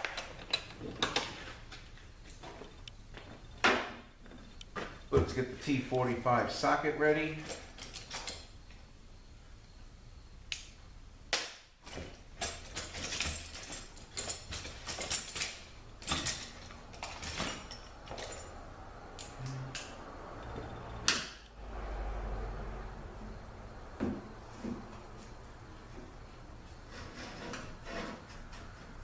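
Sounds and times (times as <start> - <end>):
metal parts clicking and knocking: 11.8 - 18.5.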